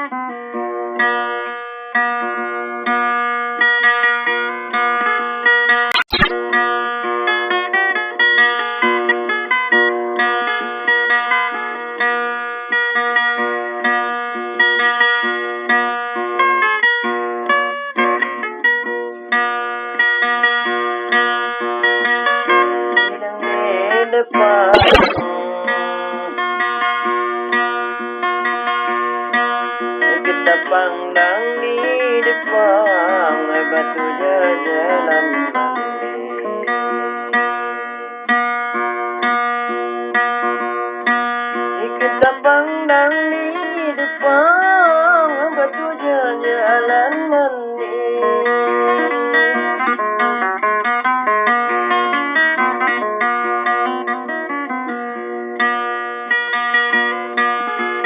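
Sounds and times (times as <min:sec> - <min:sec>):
plucked guitar music: 0:00.0 - 0:58.0
short clicks: 0:05.9 - 0:06.3, 0:24.8 - 0:25.3.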